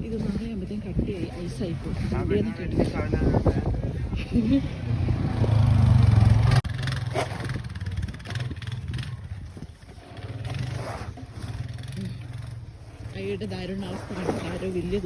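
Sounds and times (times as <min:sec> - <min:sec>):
engine running low: 0:04.4 - 0:14.1.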